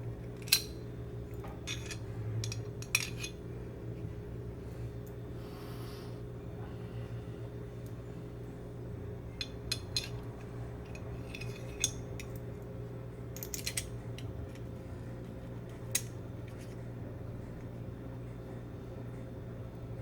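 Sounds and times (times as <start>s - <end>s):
steady low hum: 0.0s - 20.0s
metallic pistol parts clicking: 0.4s - 0.7s, 13.4s - 14.3s.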